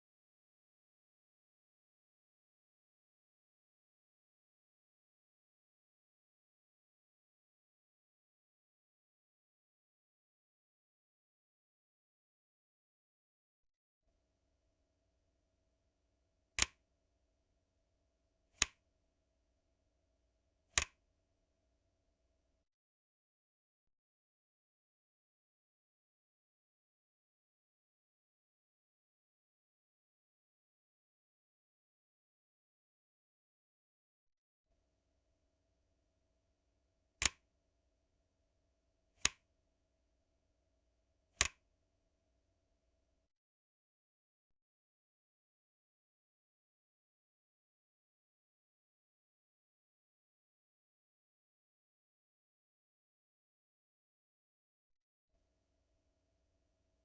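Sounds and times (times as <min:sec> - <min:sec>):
switch clicks: 0:16.6 - 0:16.8, 0:18.6 - 0:18.8, 0:37.2 - 0:37.4, 0:39.2 - 0:39.4, 0:41.4 - 0:41.6.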